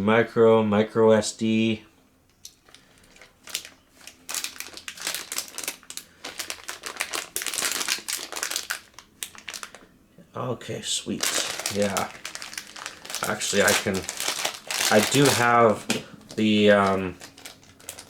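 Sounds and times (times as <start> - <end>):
packaging crinkling: 2.4 - 9.9, 11.1 - 18.0.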